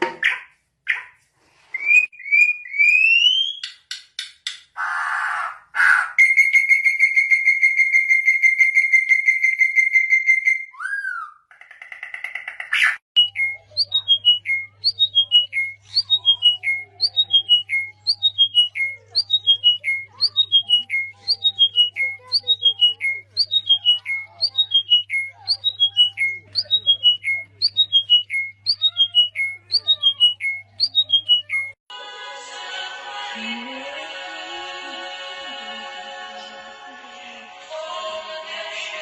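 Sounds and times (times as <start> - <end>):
bird trilling: 12.0 - 31.8.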